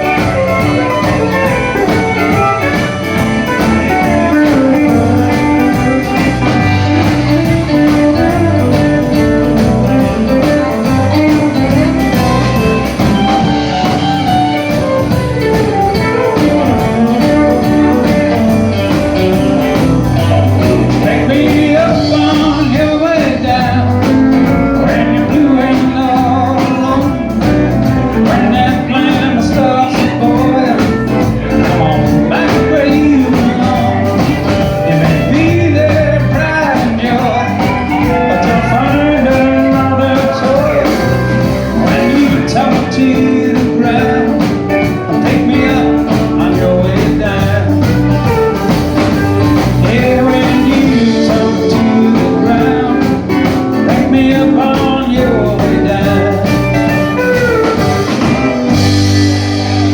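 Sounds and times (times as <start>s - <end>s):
live country band playing: 0.0s - 59.9s
person singing: 0.0s - 59.9s.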